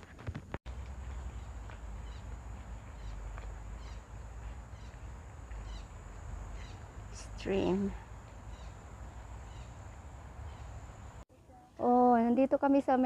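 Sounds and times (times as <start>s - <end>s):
faint high insect hum: 0.7s - 11.7s
bird chirping calls: 1.0s - 11.2s.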